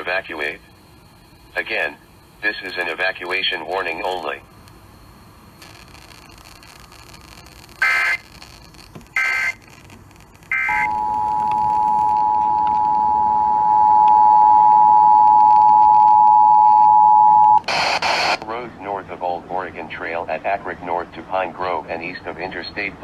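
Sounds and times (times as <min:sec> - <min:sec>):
screeching digital data bursts: 0:00.0 - 0:13.0
two-tone attention signal: 0:10.5 - 0:17.6.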